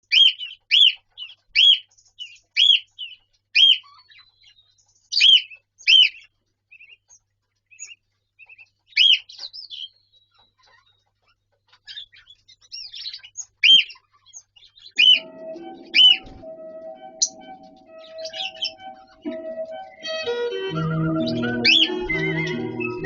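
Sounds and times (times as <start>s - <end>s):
soft bird chirps: 0.1s - 20.0s
cockatiel whistling: 15.0s - 23.0s.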